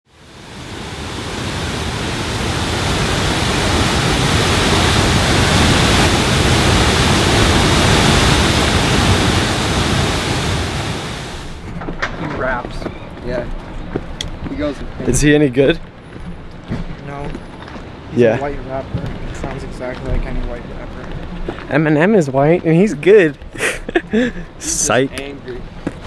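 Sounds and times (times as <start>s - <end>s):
waterfall roaring: 0.1s - 11.6s.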